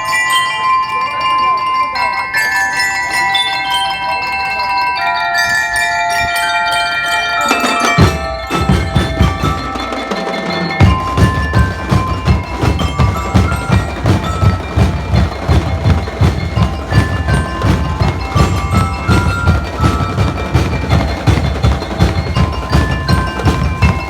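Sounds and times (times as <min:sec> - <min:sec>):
bell lyre melody: 0:00.0 - 0:24.0
steady drum beat: 0:07.4 - 0:24.0.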